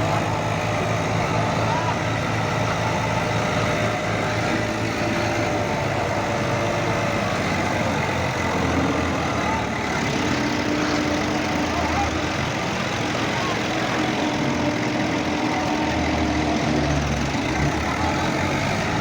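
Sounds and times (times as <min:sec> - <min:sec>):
combine harvester diesel engine running: 0:00.0 - 0:19.0.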